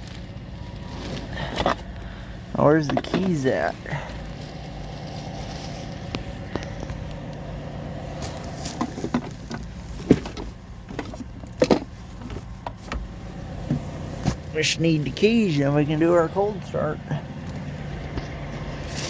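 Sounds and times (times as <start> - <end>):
steady low hum: 0.0 - 19.0
handling clicks and knocks: 2.6 - 3.8, 8.2 - 14.5.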